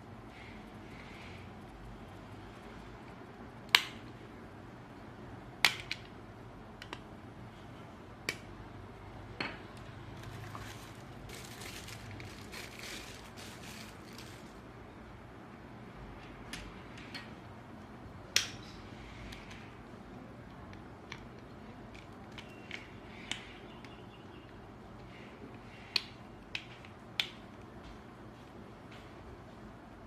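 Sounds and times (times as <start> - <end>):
soft handling rustle: 10.1 - 14.7.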